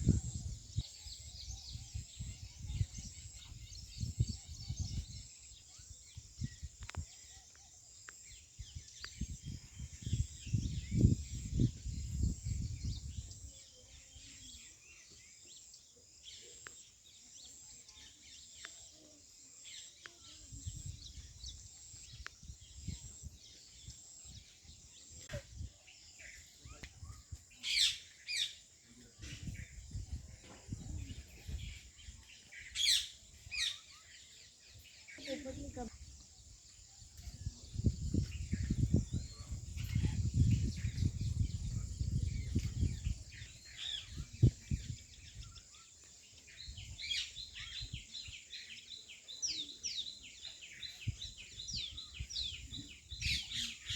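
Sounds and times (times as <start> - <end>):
birds chirping: 0.0 - 53.9.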